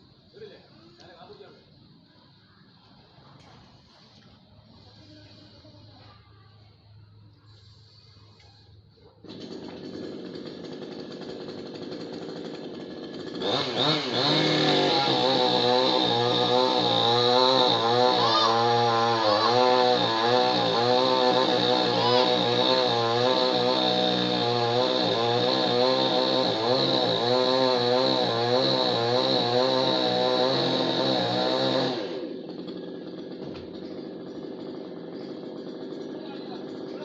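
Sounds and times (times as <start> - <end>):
chainsaw cutting wood: 9.2 - 37.0.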